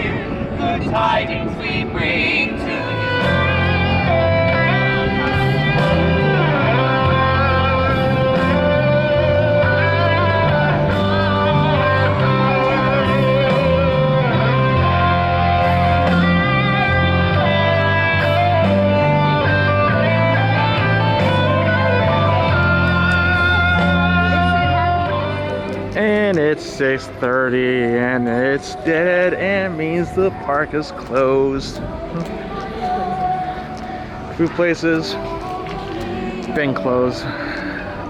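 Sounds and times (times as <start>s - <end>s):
bass line: 0.0s - 33.3s
electric guitar: 1.9s - 29.5s.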